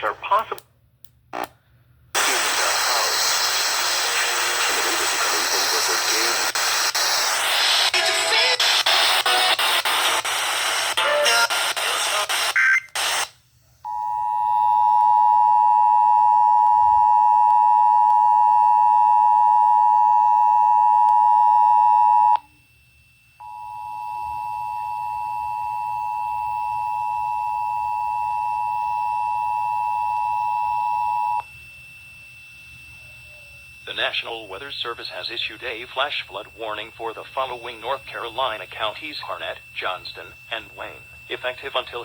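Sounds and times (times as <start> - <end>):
loud noisy burst: 2.2 - 13.2.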